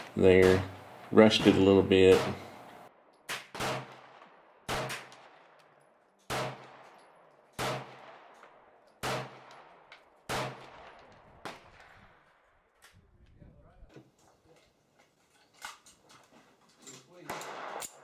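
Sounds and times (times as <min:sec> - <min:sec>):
pistol shots echoing: 0:00.0 - 0:12.4, 0:17.3 - 0:18.0.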